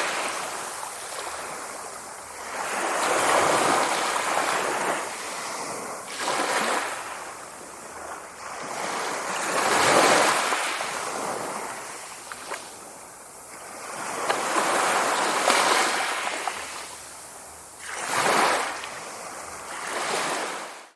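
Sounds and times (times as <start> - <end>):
sea waves breaking: 0.0 - 17.0, 17.8 - 20.8.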